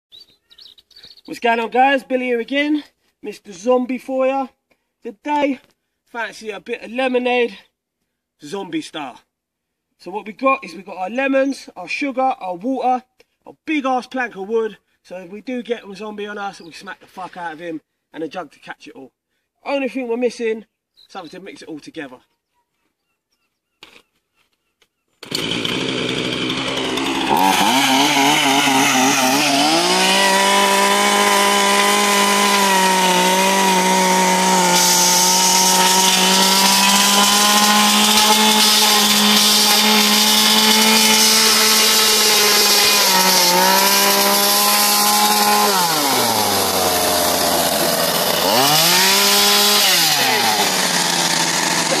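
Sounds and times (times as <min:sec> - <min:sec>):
chainsaw revving: 0:25.2 - 0:52.0.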